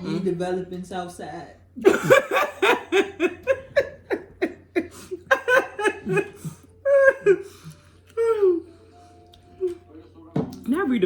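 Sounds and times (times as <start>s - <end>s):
woman laughing hard: 1.8s - 7.6s.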